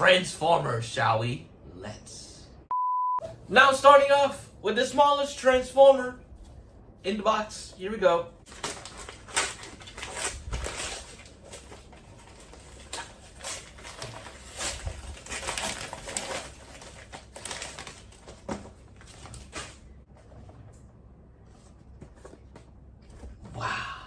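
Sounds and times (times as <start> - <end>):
cardboard and plastic packaging rustling: 8.4 - 23.6.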